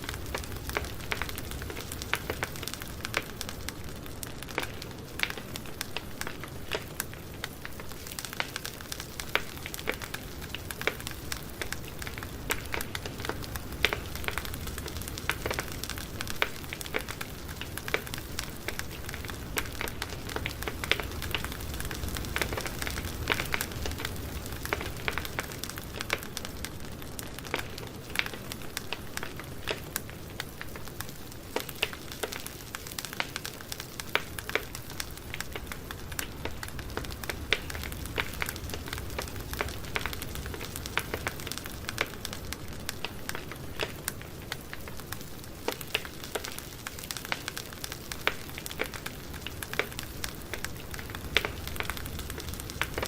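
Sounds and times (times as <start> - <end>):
campfire wood crackling: 0.0 - 53.0
low fire rumble: 0.0 - 53.0.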